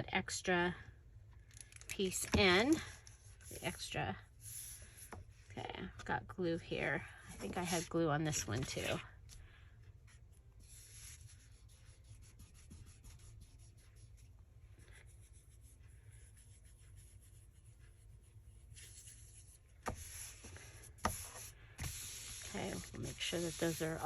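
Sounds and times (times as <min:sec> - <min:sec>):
paper rubbing and rustling: 0:07.3 - 0:09.4, 0:10.0 - 0:14.3, 0:15.0 - 0:24.0.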